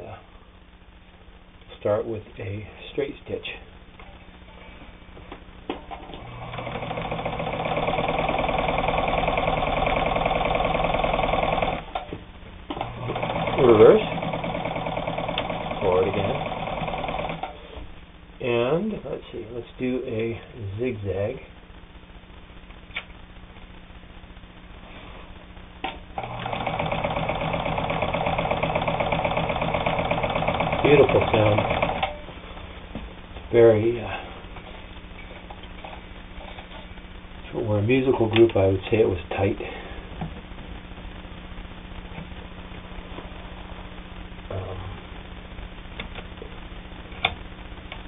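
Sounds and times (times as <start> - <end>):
sewing machine stitching: 6.0 - 12.1, 12.8 - 17.6, 26.2 - 32.2
sewing machine clicks: 12.8 - 17.6, 26.2 - 32.2.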